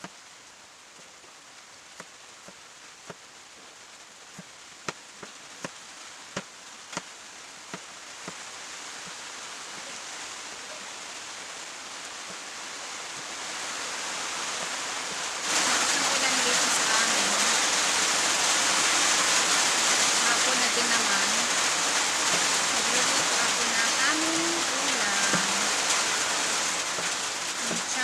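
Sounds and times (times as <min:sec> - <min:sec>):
rain hiss: 0:00.0 - 0:28.0
sharp irregular taps: 0:26.9 - 0:27.9.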